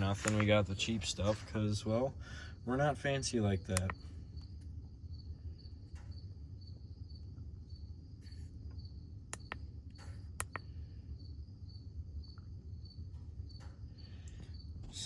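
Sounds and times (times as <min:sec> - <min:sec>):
sharp clicks: 0:00.0 - 0:00.6, 0:03.7 - 0:04.1, 0:09.3 - 0:10.7
crickets chirping: 0:00.0 - 0:15.0
low background rumble: 0:00.0 - 0:15.0.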